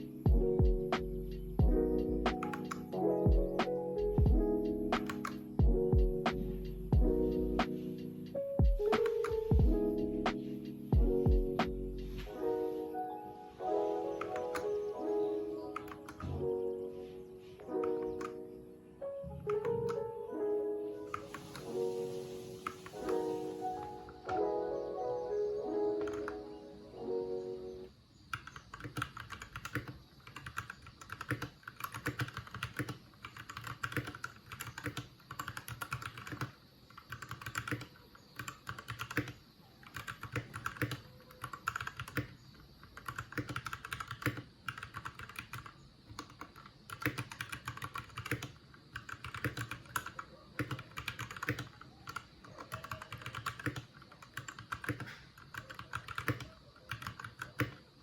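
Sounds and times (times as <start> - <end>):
mechanical keyboard key clicks: 28.3 - 57.8.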